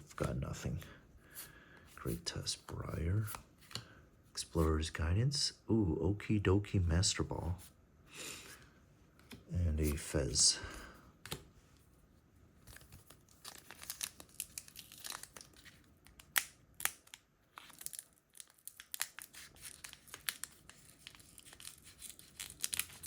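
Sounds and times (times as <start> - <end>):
foil wrapper crinkling and tearing: 12.7 - 23.0.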